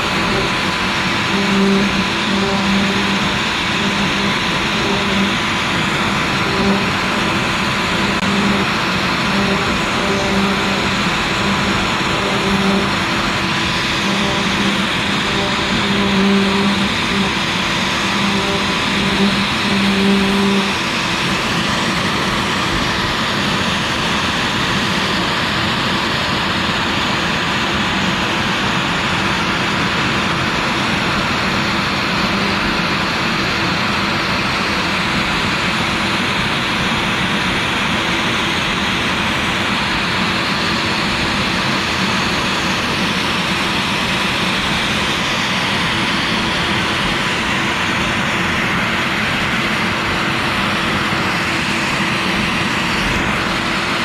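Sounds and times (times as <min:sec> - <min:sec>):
router spindle cutting plastic: 0:00.0 - 0:25.7, 0:29.9 - 0:33.8.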